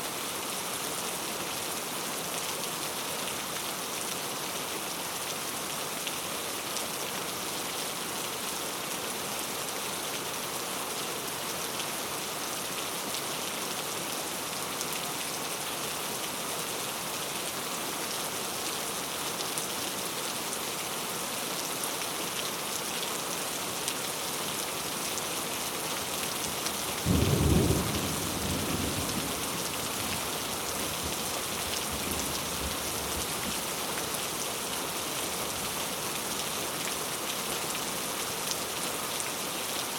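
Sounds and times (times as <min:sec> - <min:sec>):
heavy rain falling: 0:00.1 - 0:39.9
thunder rumbling: 0:27.1 - 0:29.7.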